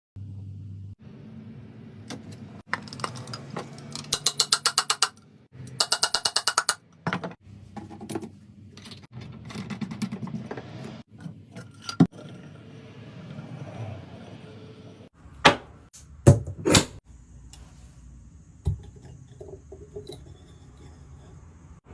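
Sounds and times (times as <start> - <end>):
scraping and handling noise: 2.1 - 14.4
drill driver ratcheting clicks: 4.0 - 6.8.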